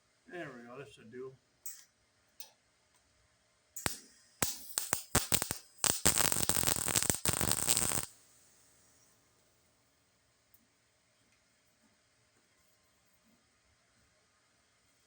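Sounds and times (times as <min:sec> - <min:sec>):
welder sputtering and crackling: 0:03.8 - 0:08.2.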